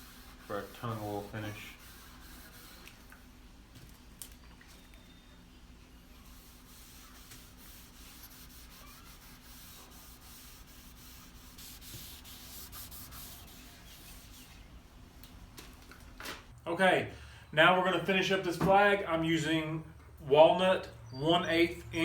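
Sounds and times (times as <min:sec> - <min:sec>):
cloth rubbing on sanded wood: 0:00.0 - 0:03.0, 0:06.2 - 0:14.7.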